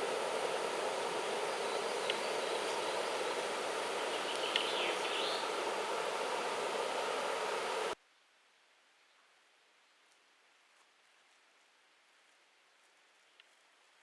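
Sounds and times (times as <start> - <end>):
steady outdoor rushing noise: 0.0 - 8.0.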